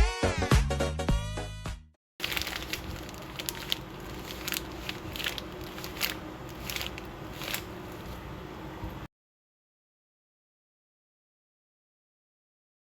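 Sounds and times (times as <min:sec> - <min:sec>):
squishy toy crackling and crunching: 0:02.2 - 0:08.7.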